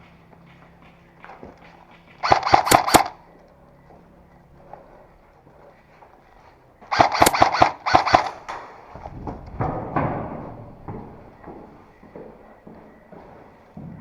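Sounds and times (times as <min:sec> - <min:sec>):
airsoft gun shots: 0:02.2 - 0:03.2, 0:06.9 - 0:08.8.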